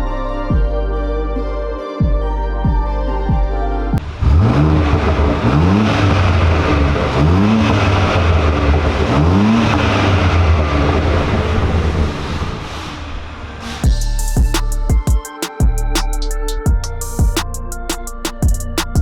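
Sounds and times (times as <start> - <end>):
car engine revving: 4.0 - 14.0.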